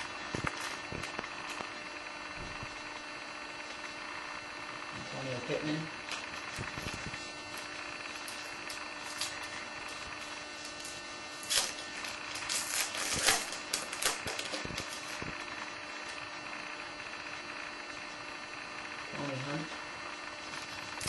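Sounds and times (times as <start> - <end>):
cards and foil wrappers rustling: 0.0 - 1.8, 6.0 - 16.2
steady low hum: 0.0 - 21.0.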